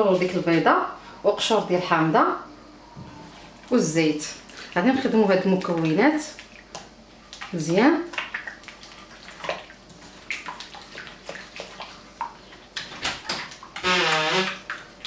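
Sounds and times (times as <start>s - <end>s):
short voice sound: 13.8s - 14.6s.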